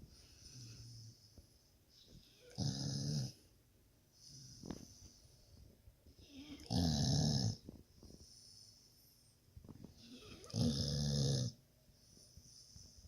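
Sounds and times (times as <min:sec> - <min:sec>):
quiet breathing: 0:00.0 - 0:06.7, 0:07.4 - 0:10.6, 0:11.4 - 0:13.0
rasping snores: 0:02.6 - 0:03.4, 0:06.7 - 0:07.6, 0:10.5 - 0:11.6.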